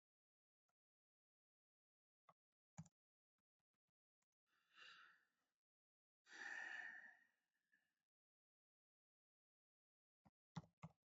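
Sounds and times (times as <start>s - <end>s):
faint breaths: 4.6s - 5.2s, 6.3s - 7.2s.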